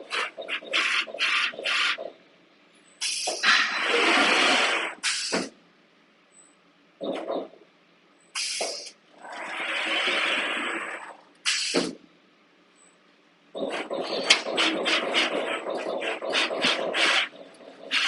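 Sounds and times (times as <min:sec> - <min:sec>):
punch press air hiss bursts: 0:03.0 - 0:05.6, 0:08.4 - 0:09.0, 0:11.4 - 0:12.0.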